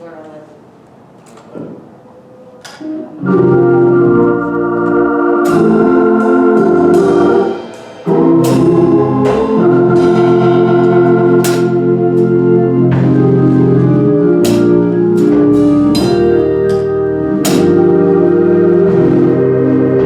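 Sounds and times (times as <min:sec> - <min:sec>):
organ sustained chords: 0:02.2 - 0:20.0
short percussive hits: 0:05.5 - 0:18.0.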